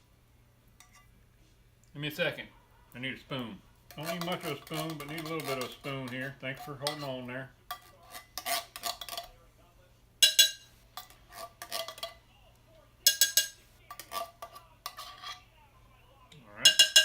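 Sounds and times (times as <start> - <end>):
metal spoon clinking on can: 3.9 - 9.3, 10.2 - 12.2, 13.1 - 15.4, 16.6 - 17.0
spoon scraping can: 3.9 - 9.3, 10.2 - 12.2, 13.1 - 15.5.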